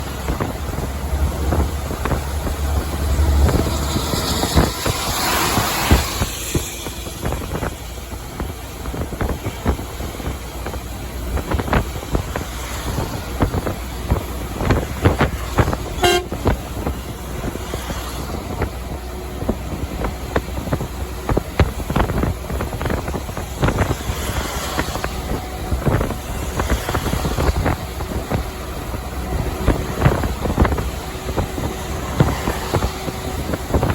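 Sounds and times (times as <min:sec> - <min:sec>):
truck engine and road rumble: 0:00.0 - 0:33.9
truck horn toots: 0:15.8 - 0:16.6.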